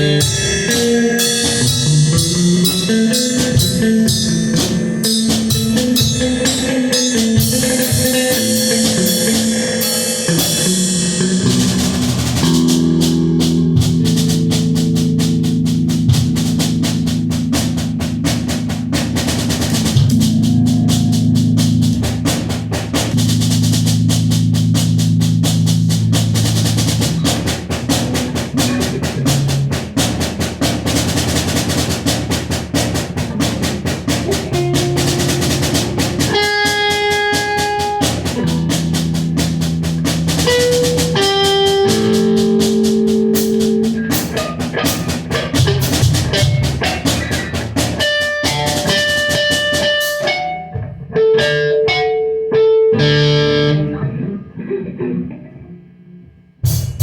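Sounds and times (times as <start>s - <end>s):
guitar notes ringing: 0.0s - 26.2s, 33.2s - 57.0s
drum kit playing: 0.0s - 53.9s, 56.6s - 57.0s.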